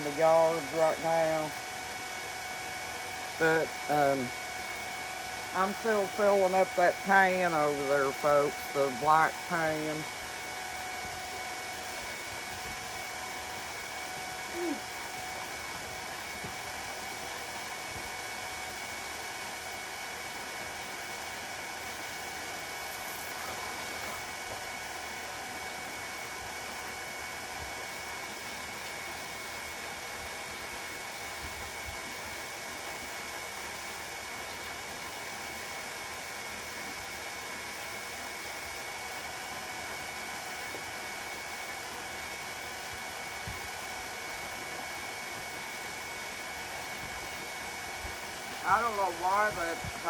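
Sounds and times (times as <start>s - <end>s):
water running from hose into pan: 0.0s - 50.0s
thin steady high tone: 3.4s - 18.0s, 48.1s - 50.0s.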